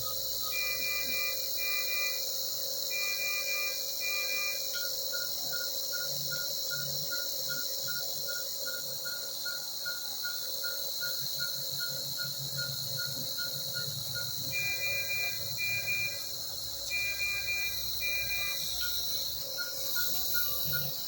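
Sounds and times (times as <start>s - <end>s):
monitor beeping: 11.1s - 21.0s
higher alarm tones: 16.8s - 19.2s.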